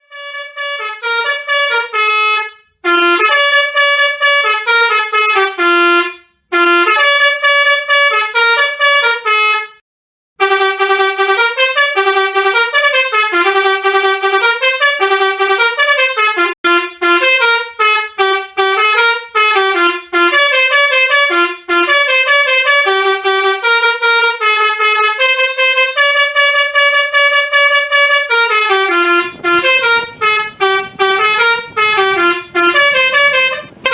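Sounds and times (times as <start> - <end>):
musical bus horn tune: 0.0 - 9.8, 10.4 - 33.9
low rumble: 27.7 - 33.9.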